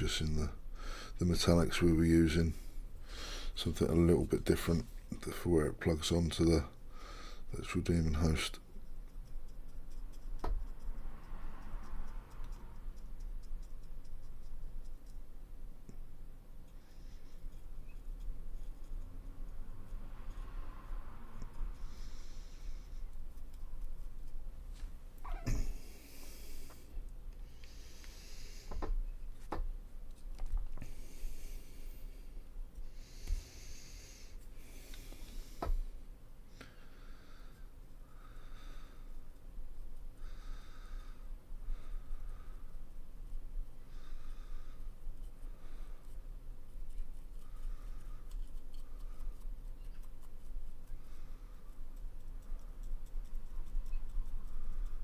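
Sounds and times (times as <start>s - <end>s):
faint regular ticking: 7.9s - 20.4s
person breathing through nose: 25.7s - 28.9s.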